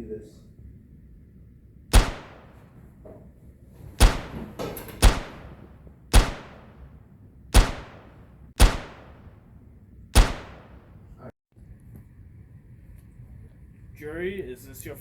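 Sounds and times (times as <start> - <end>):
gunshots: 1.9 - 2.8, 4.0 - 7.0, 7.6 - 9.5, 10.2 - 11.2.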